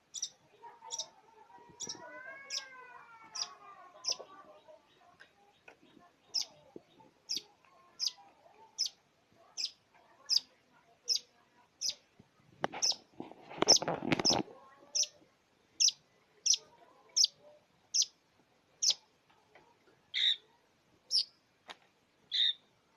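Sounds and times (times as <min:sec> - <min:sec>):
harsh rasping bird call: 0:01.8 - 0:04.2.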